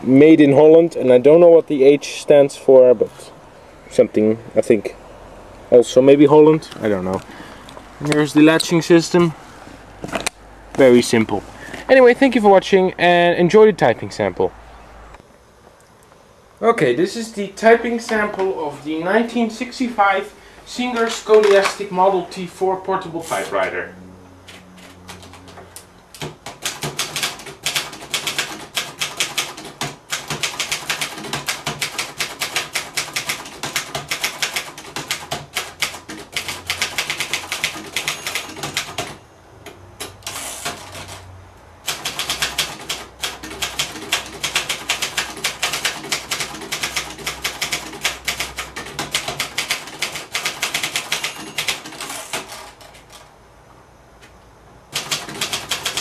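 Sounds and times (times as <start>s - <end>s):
manual typewriter typing: 26.2s - 39.2s, 40.0s - 53.3s, 54.9s - 56.0s.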